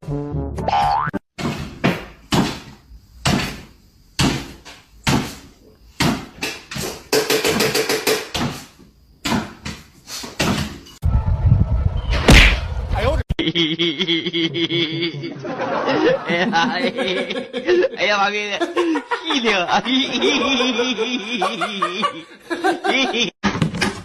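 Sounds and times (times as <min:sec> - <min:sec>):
sharp knocks: 0:01.4 - 0:05.4, 0:06.0 - 0:08.6.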